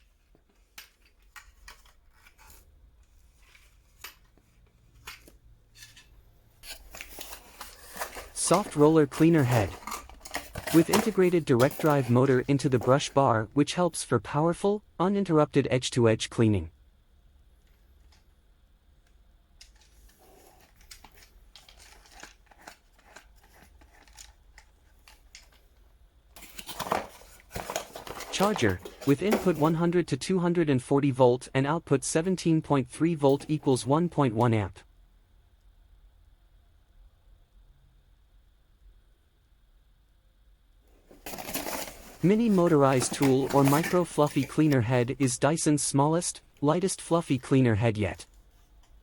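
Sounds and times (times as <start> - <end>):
packaging rustling: 6.6 - 13.2, 19.8 - 25.8, 26.4 - 29.8, 41.0 - 45.2.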